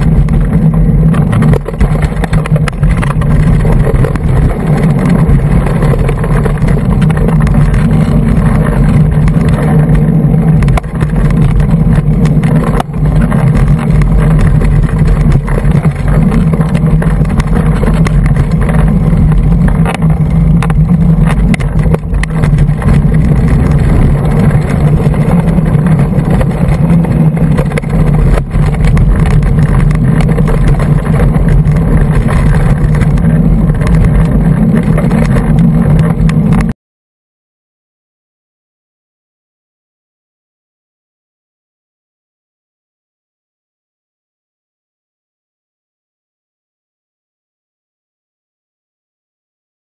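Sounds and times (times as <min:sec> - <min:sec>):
mountain bike rattling: 0:00.0 - 0:36.7
wind buffeting microphone: 0:00.0 - 0:36.7.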